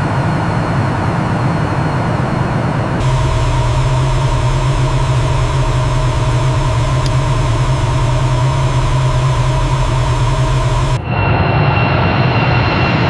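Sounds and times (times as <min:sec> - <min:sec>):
jet aircraft engine running: 0:00.0 - 0:13.0.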